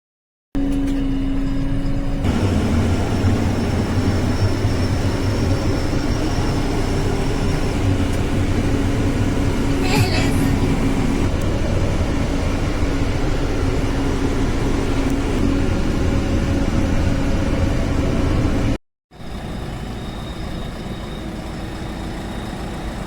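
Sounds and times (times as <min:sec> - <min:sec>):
diesel engine running: 0:00.6 - 0:23.0.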